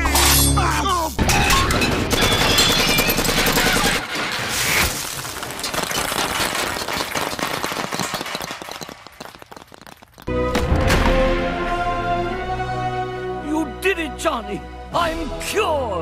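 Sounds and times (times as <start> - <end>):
clatter of sharp cracks: 2.0 - 10.3.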